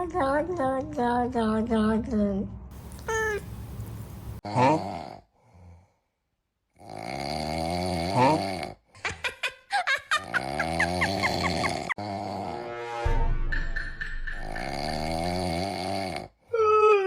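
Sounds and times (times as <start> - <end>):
whistling snoring: 14.5 - 16.3.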